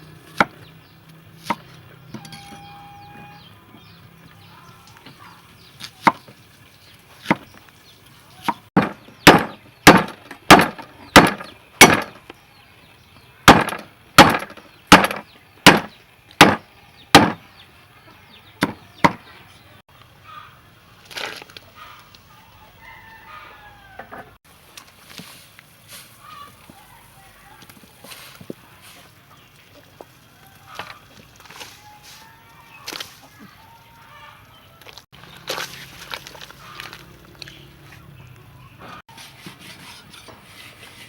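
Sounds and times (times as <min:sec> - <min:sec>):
chopping strikes on wood: 0:06.0 - 0:06.3, 0:07.2 - 0:07.5, 0:08.4 - 0:12.2, 0:13.5 - 0:16.6, 0:17.2 - 0:17.4, 0:18.6 - 0:19.3.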